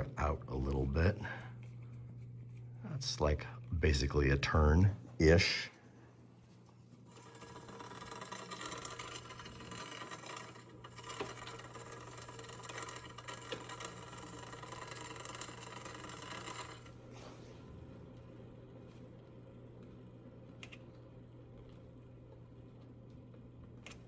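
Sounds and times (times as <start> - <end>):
bicycle chain whirring: 7.1 - 17.3.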